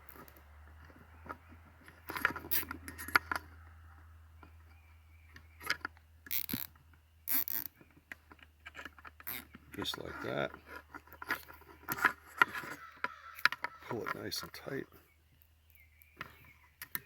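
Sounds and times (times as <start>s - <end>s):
handling rustles and clicks: 0.0s - 17.0s
zip tie ratcheting: 2.4s - 3.1s, 6.2s - 7.8s, 8.7s - 9.5s.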